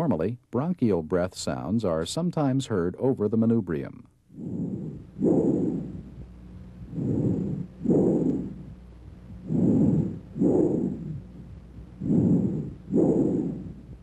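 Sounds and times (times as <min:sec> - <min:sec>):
breath sounds through stethoscope: 0:04.3 - 0:14.0.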